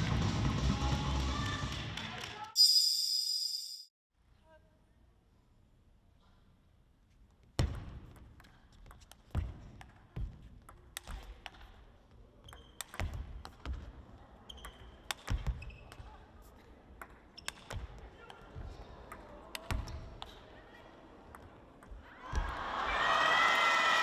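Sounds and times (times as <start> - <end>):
shoes squeaking on floor: 14.4 - 16.3.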